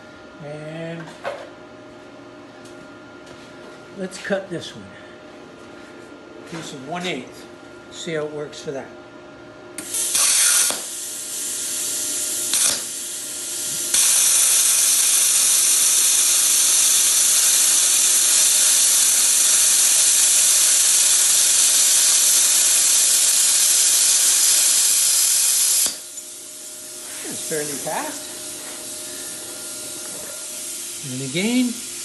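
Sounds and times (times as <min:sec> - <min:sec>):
plasma cutter air hiss: 0:09.8 - 0:32.0.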